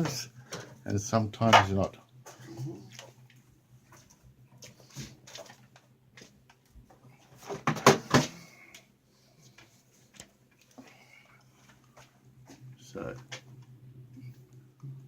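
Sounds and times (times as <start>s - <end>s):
faint low hum: 0.0s - 15.0s
objects knocking and clunking: 1.4s - 3.2s, 7.4s - 8.5s.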